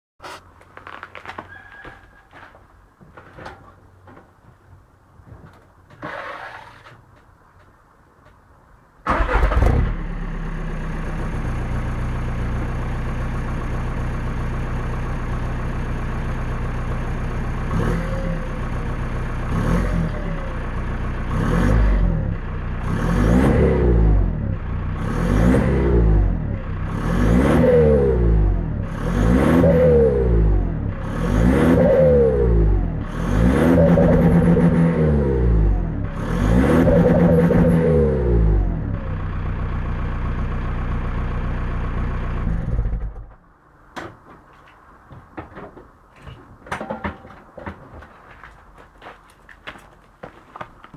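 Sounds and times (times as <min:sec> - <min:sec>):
car engine idling: 0:06.8 - 0:21.4, 0:38.2 - 0:46.4
diesel car engine starting: 0:09.0 - 0:43.8
car engine revving in blips: 0:09.1 - 0:13.4, 0:16.8 - 0:39.6.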